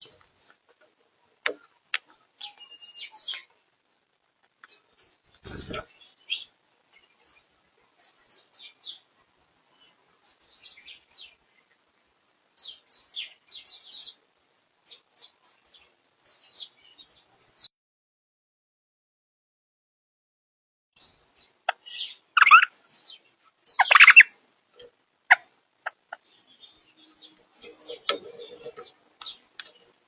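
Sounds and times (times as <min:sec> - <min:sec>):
parrots chattering chirps: 0:05.5 - 0:06.5, 0:21.7 - 0:24.4.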